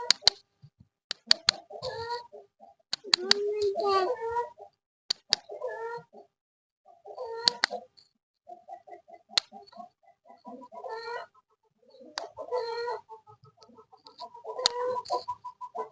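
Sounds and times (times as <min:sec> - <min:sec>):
sharp clicks: 0:00.0 - 0:00.5, 0:01.1 - 0:01.6, 0:02.9 - 0:03.8, 0:05.1 - 0:05.5, 0:07.4 - 0:08.1
chicken clucking: 0:01.2 - 0:06.3, 0:06.9 - 0:07.9, 0:08.5 - 0:15.9
chicken squawking: 0:01.4 - 0:04.7, 0:05.4 - 0:06.3, 0:06.9 - 0:07.9, 0:08.5 - 0:15.9.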